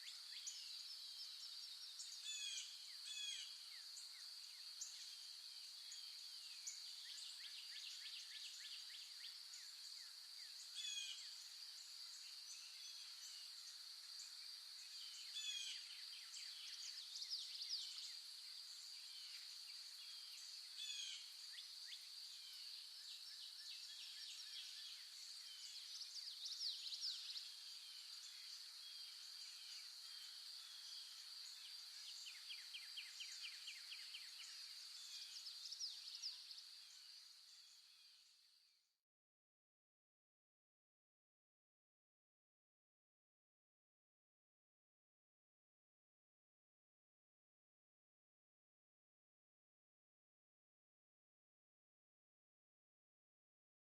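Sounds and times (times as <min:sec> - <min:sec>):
bird chirping: 0:00.0 - 0:38.4.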